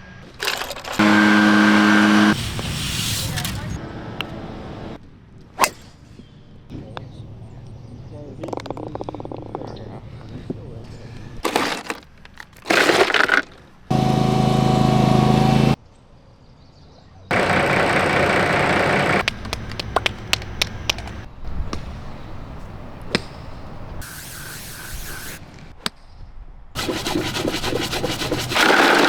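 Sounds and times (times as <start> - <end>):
hiss: 2.4 - 3.7, 24.0 - 25.4.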